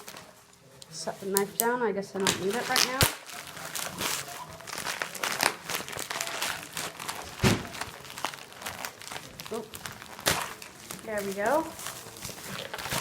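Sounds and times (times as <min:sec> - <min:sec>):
packaging crinkling and tearing: 0:00.0 - 0:13.0.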